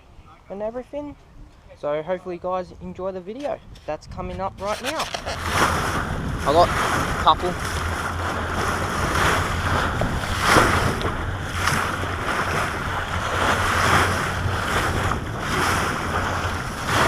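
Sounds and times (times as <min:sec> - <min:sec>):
wind buffeting microphone: 0:02.5 - 0:17.0
water sloshing around boat: 0:03.4 - 0:17.0
steady low hum: 0:03.6 - 0:17.0.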